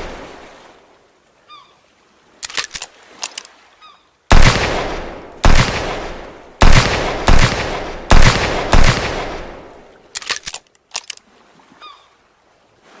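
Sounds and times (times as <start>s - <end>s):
quick sharp clicks: 2.4s - 3.5s
revolver gunshots with echo: 4.3s - 9.7s.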